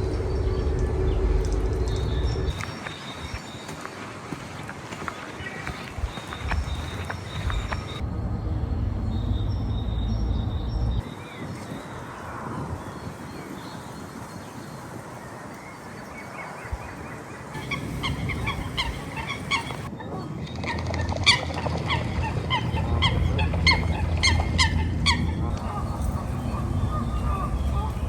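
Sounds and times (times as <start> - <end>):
low rumble: 0.0 - 2.6, 7.4 - 11.0
geese honking: 17.6 - 19.9, 20.6 - 28.0.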